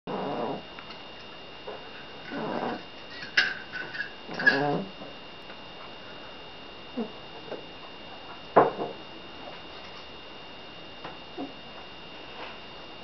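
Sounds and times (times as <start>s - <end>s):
cat snoring: 0.1s - 0.6s, 2.3s - 2.9s.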